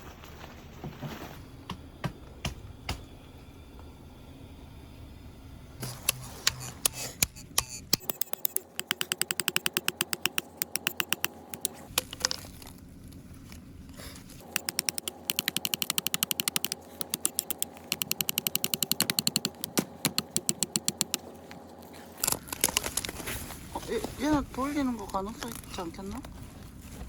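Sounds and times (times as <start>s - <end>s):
rapid mechanical clicking: 6.0s - 12.4s, 14.4s - 21.4s.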